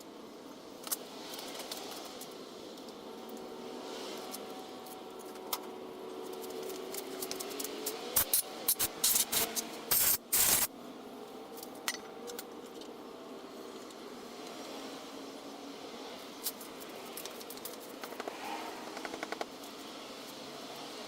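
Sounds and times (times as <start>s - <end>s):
aerosol spray hissing: 8.2s - 10.7s.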